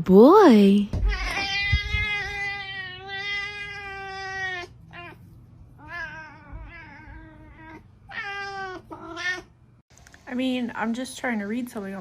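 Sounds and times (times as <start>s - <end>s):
cat meowing: 1.0s - 5.2s, 5.8s - 9.5s.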